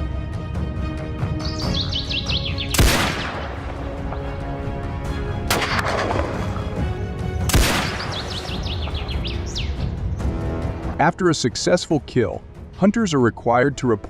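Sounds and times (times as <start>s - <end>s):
background music: 0.0s - 14.0s
rifle shots with echo: 2.7s - 4.2s, 5.4s - 6.6s, 7.4s - 8.7s.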